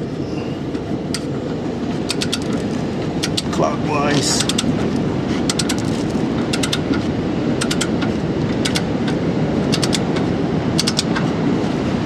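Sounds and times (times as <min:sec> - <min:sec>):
ratchet wrench clicking: 0:02.1 - 0:03.5, 0:04.4 - 0:04.7, 0:05.5 - 0:07.0, 0:07.6 - 0:08.9, 0:09.7 - 0:10.2, 0:10.8 - 0:11.2.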